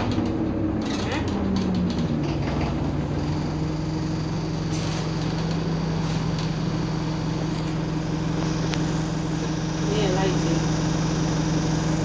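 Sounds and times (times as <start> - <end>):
faint clicks and rattles: 0.0 - 2.9
bus engine humming: 0.0 - 12.0.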